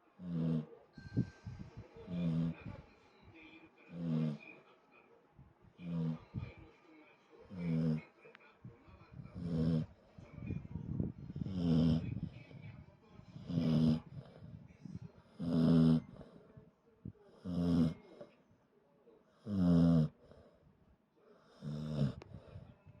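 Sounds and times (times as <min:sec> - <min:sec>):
dog snoring loudly: 0:00.2 - 0:00.7, 0:02.1 - 0:02.8, 0:03.9 - 0:04.6, 0:05.8 - 0:06.4, 0:07.5 - 0:08.1, 0:09.3 - 0:10.0, 0:11.3 - 0:12.6, 0:13.3 - 0:14.5, 0:15.2 - 0:16.4, 0:17.4 - 0:18.3, 0:19.4 - 0:20.5, 0:21.5 - 0:22.6.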